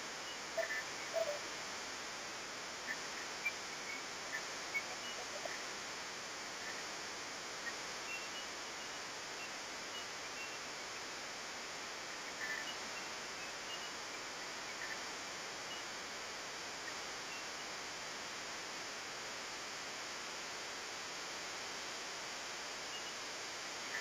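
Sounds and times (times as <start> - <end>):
outdoor background hiss: 0.0 - 24.0
faint high chirps: 2.8 - 5.6.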